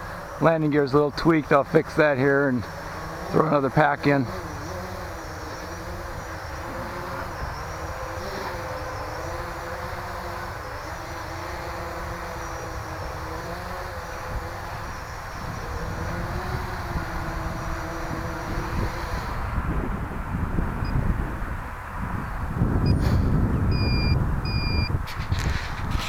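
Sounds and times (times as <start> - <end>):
quadcopter motors buzzing: 0.0 - 26.0.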